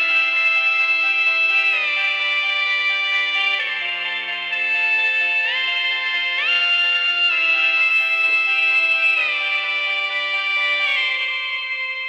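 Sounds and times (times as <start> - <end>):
mobile phone ringtone melody: 7.6 - 8.4.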